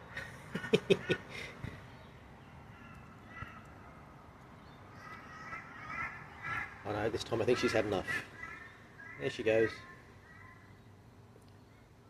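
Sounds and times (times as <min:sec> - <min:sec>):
crows cawing: 0:02.6 - 0:04.0, 0:04.9 - 0:10.8.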